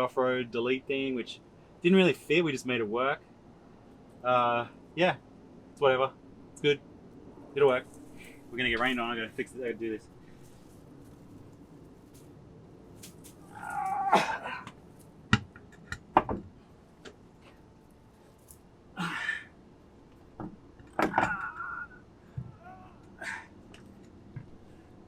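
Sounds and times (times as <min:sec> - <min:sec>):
man groaning with effort: 0:13.4 - 0:14.7, 0:19.0 - 0:19.5, 0:21.1 - 0:23.5.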